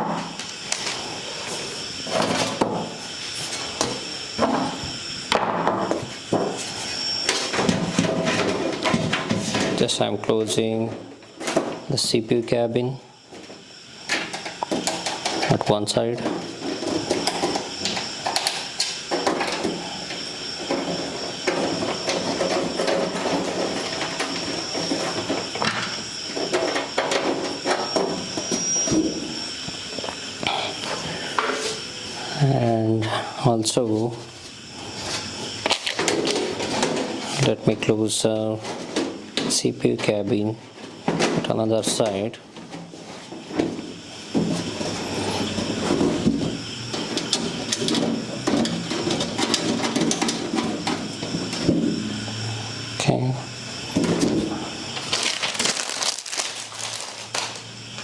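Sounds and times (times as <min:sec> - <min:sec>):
steady high whine: 0:00.0 - 0:58.0
metal scraping and rattling: 0:07.3 - 0:10.7, 0:20.5 - 0:29.2, 0:35.1 - 0:37.5, 0:38.6 - 0:42.0, 0:42.6 - 0:51.9.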